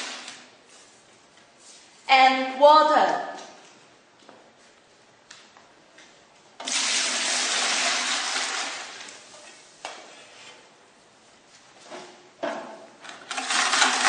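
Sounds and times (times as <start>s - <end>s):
water pouring into container: 6.6s - 9.2s.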